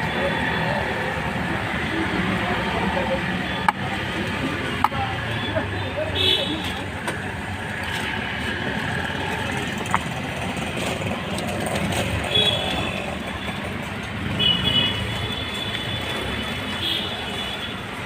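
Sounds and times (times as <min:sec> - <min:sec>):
crowd noise: 0:00.0 - 0:14.4
traffic: 0:00.0 - 0:18.0.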